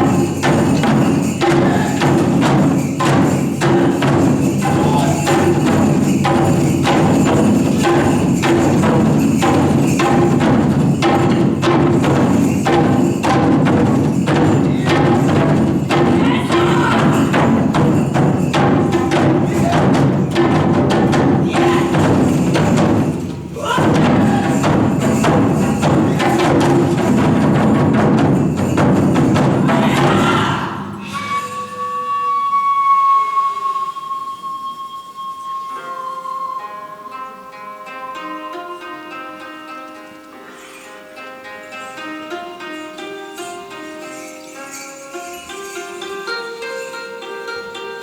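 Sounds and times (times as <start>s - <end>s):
taiko drums playing: 0.0s - 32.1s.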